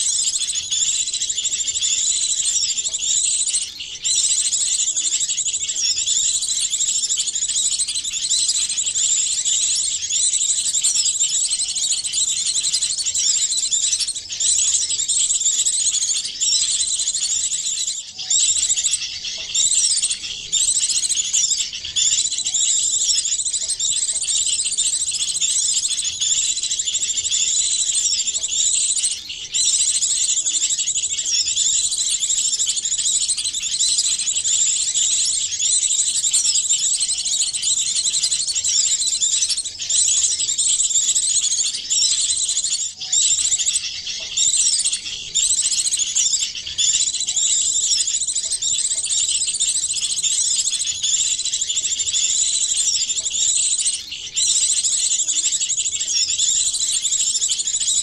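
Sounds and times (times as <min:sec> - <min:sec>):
chorus of songbirds twittering: 0:00.0 - 0:58.0.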